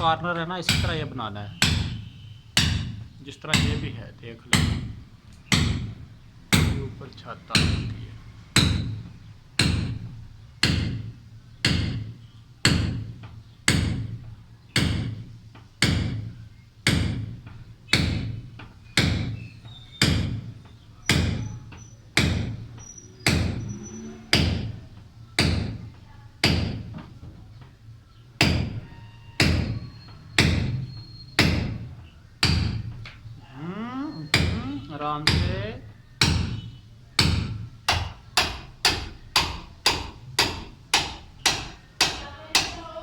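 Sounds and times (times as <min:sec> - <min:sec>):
hammer striking steel chisel: 0:00.6 - 0:03.9, 0:04.5 - 0:06.9, 0:07.6 - 0:08.0, 0:08.6 - 0:14.2, 0:14.8 - 0:20.5, 0:22.2 - 0:24.8, 0:28.4 - 0:31.8, 0:32.4 - 0:33.0, 0:34.3 - 0:35.5, 0:36.2 - 0:42.9.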